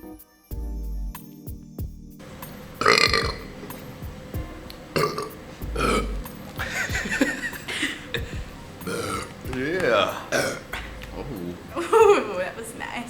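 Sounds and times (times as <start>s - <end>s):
people burping: 2.2s - 4.1s, 4.9s - 12.6s.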